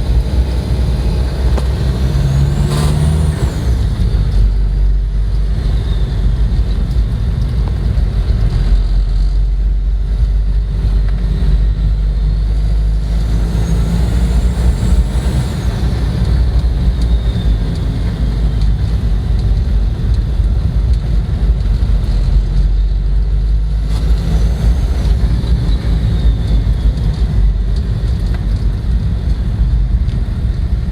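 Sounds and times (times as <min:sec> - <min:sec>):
diesel engine running: 0:00.0 - 0:30.9
turbocharger whistle: 0:13.2 - 0:18.0, 0:24.6 - 0:27.2.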